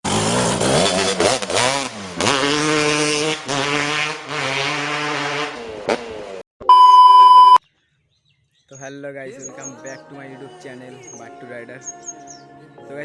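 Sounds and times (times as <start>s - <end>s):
motorcycle engine revving: 0.0s - 6.4s.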